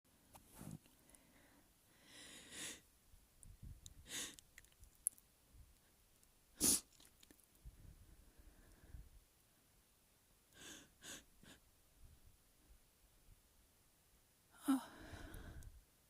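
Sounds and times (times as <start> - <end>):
breathy intakes of breath: 1.0 - 2.8, 14.6 - 15.8
person sneezing: 6.6 - 6.9.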